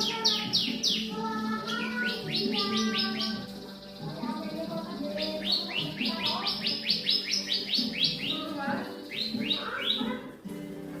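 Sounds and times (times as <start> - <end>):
bird trilling high notes: 0.0 - 10.4.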